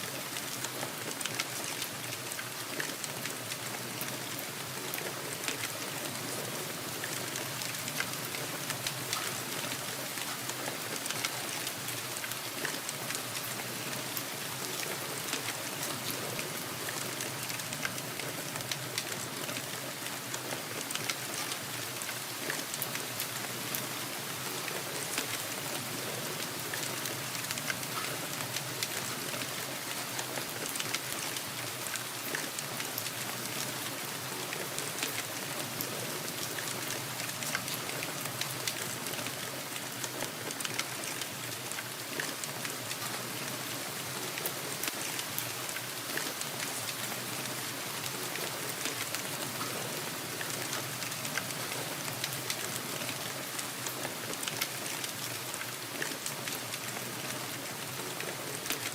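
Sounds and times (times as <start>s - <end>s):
steady rainfall: 0.0s - 58.9s.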